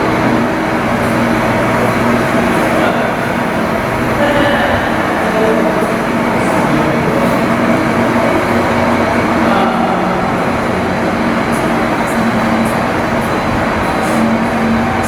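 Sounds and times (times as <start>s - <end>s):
machinery droning: 0.0s - 15.0s.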